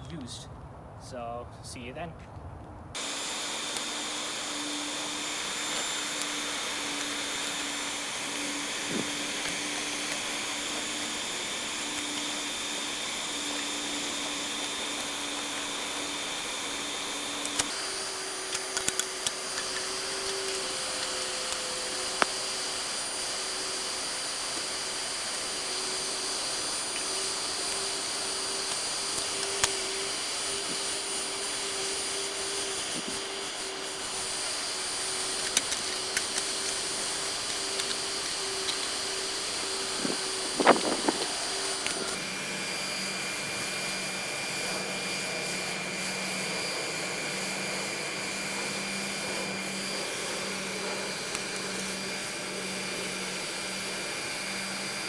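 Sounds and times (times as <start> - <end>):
hair dryer blowing air: 2.9 - 55.0
sharp clicks and pops: 18.5 - 21.6, 35.4 - 36.8.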